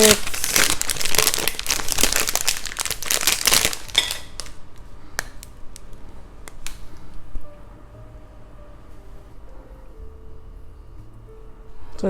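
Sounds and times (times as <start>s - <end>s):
chocolate wrapper crinkling: 0.0s - 6.8s.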